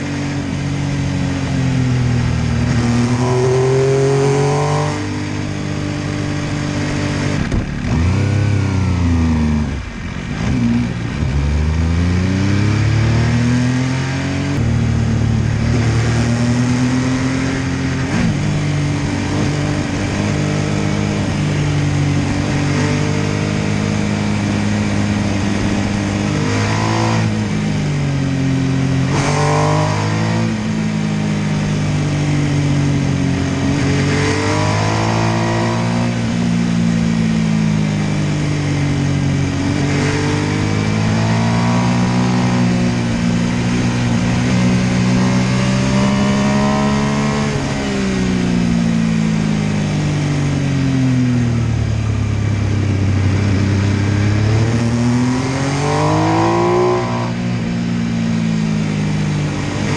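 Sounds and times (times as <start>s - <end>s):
motorcycle engine revving: 0.0s - 59.9s.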